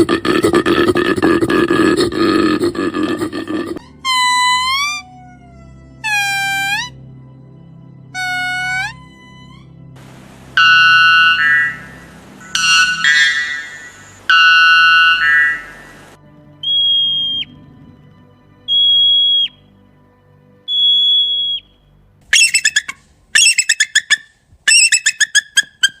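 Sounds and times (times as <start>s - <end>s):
loud sustained animal call: 2.2s - 7.0s, 8.1s - 19.7s, 20.7s - 21.7s, 22.3s - 26.0s
high whistles with downward drop: 10.6s - 17.5s, 18.7s - 19.6s, 20.7s - 21.7s
short sharp yelping calls: 10.6s - 17.5s, 18.7s - 19.6s, 20.7s - 21.7s, 22.3s - 26.0s.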